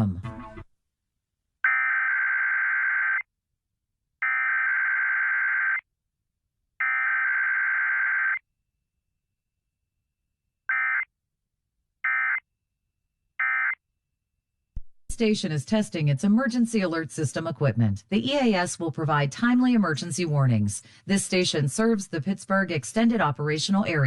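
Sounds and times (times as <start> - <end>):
emergency alert data tones: 6.8 - 8.4, 12.1 - 12.4.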